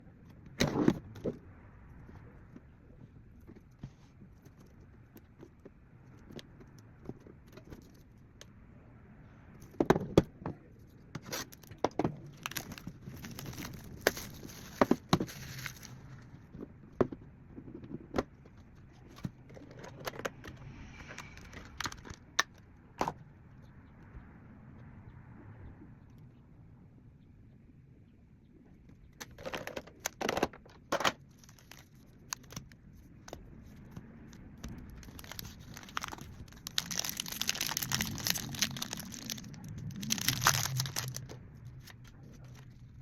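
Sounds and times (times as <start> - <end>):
foil wrappers crinkling and tearing: 12.3 - 16.0, 31.3 - 32.8, 34.9 - 41.9.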